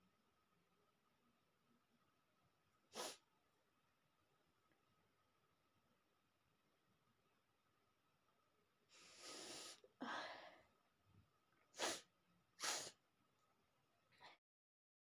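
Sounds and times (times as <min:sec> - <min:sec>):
noisy in-breath: 0:02.9 - 0:03.2, 0:08.9 - 0:10.7, 0:11.8 - 0:13.0.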